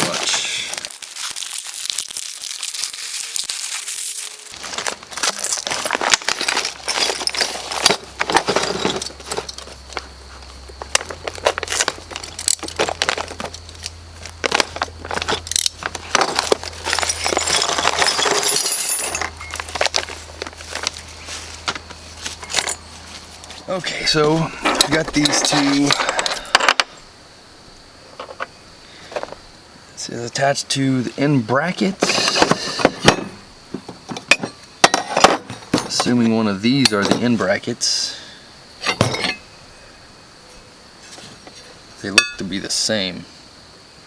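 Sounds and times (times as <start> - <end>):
plastic rustles and clicks: 0.1 - 10.1, 10.8 - 18.6
plastic packaging peeling crackle: 0.7 - 6.4
small metal hardware clinking: 15.2 - 20.1, 42.2 - 42.5.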